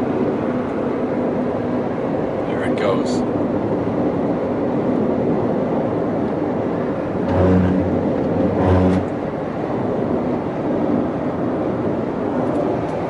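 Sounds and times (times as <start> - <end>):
road and engine noise in car: 0.0 - 13.0
low droning tone: 7.0 - 9.3.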